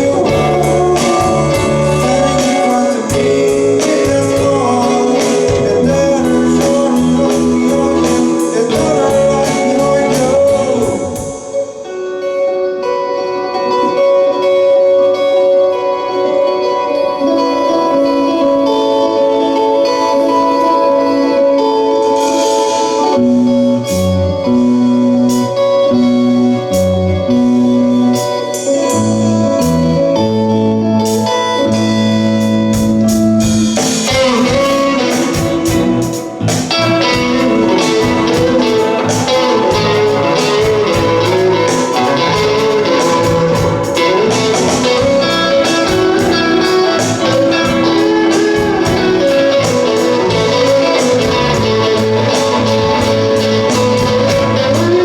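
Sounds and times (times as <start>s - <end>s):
electric guitar: 0.0s - 55.0s
rock band playing: 0.0s - 55.0s.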